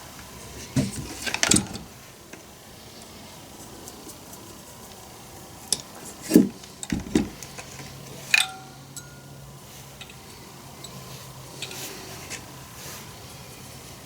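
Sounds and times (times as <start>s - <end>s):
small metal parts clicking: 8.3s - 9.2s
metal clink: 8.3s - 9.4s.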